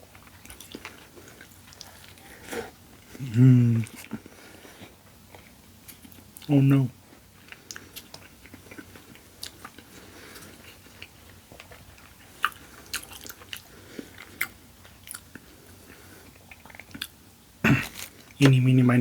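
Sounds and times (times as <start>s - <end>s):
biting and chewing food: 0.0s - 6.5s, 7.2s - 18.6s
sharp crunches and clicks: 17.7s - 18.6s.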